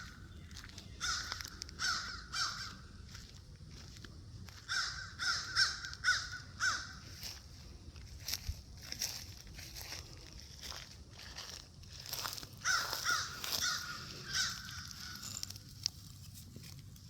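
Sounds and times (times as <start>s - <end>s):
crows cawing: 0.8s - 3.2s, 4.5s - 7.4s, 12.1s - 15.6s.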